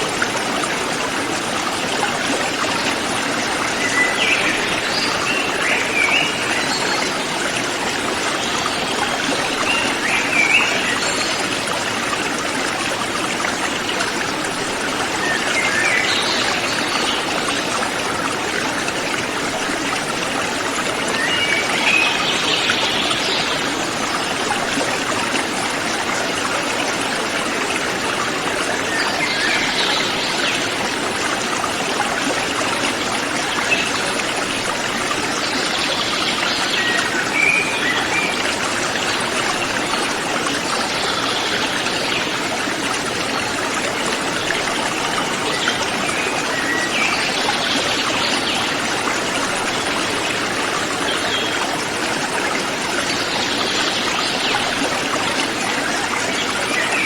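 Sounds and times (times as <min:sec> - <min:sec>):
river flowing: 0:00.0 - 0:57.0.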